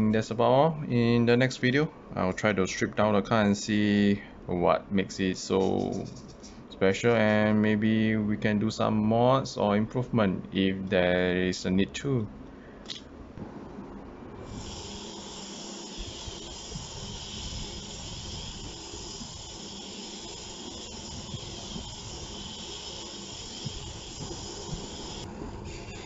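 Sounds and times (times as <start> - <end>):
micro rc car motor whining: 14.4 - 25.3.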